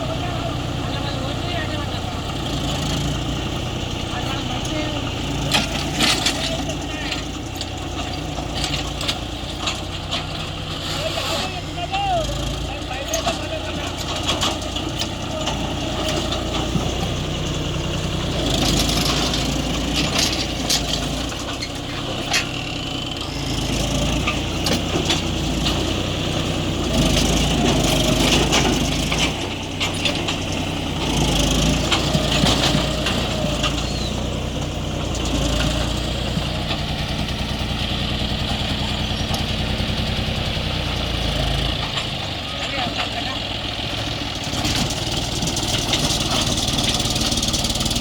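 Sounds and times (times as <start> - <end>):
tractor diesel engine running: 0.0 - 48.0
knocks and clatter: 4.3 - 11.1, 12.3 - 17.4, 18.2 - 40.3, 40.9 - 48.0.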